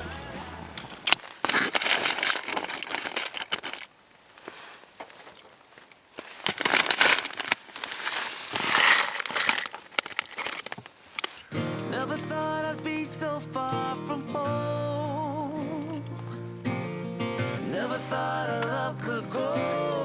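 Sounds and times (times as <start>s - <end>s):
plastic packaging crinkling: 1.0s - 3.9s, 4.5s - 11.5s.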